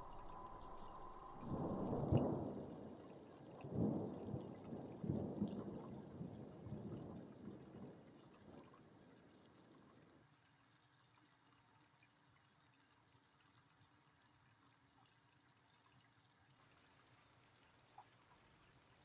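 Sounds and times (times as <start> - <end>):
thunder rumbling: 0.0 - 9.7.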